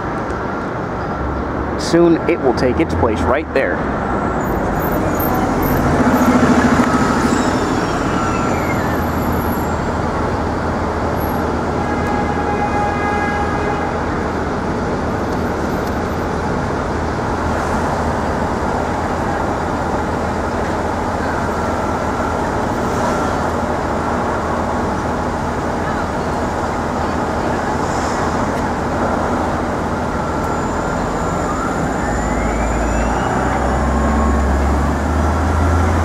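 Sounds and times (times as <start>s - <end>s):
city street traffic: 0.0s - 36.0s
high tone sliding downward: 2.8s - 10.5s, 29.9s - 36.0s.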